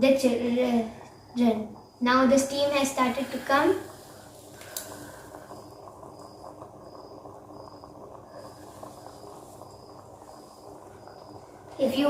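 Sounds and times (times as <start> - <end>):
water simmering in a vaporizer: 0.0 - 12.0
small ticks: 4.2 - 11.5.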